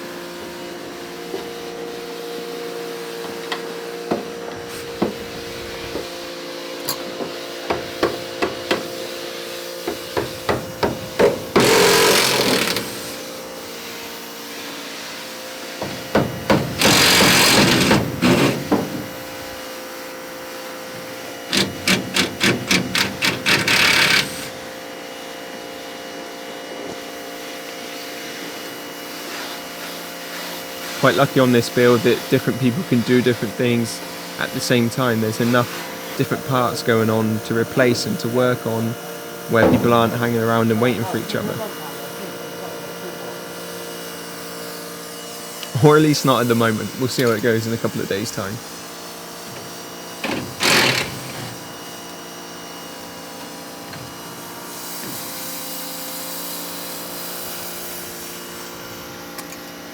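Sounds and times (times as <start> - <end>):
steady hum: 15.8 - 24.8.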